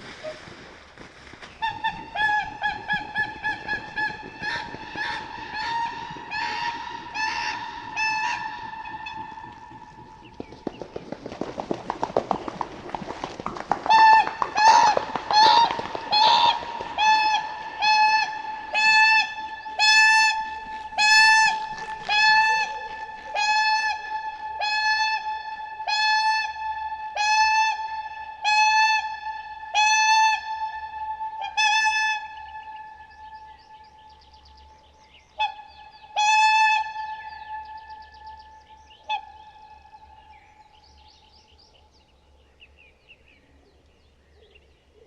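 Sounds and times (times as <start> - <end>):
swans trumpeting calls: 1.6 - 10.0, 13.5 - 32.7.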